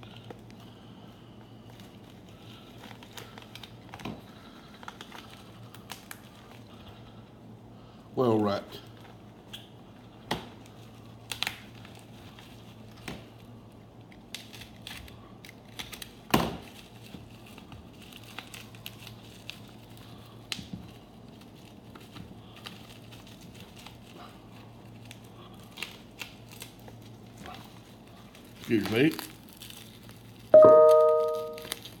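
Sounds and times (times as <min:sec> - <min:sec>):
packaging crinkling and tearing: 0:00.0 - 0:06.7, 0:10.6 - 0:32.0.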